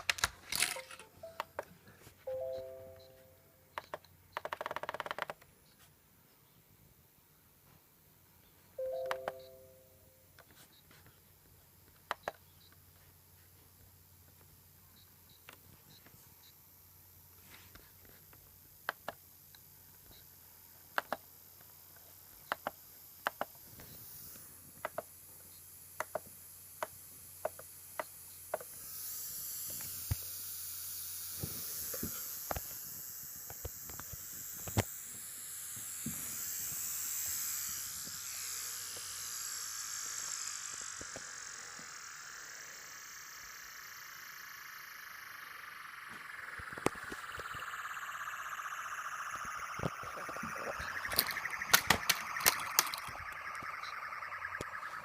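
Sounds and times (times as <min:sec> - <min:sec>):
wavering high hiss: 0:28.2 - 0:55.0.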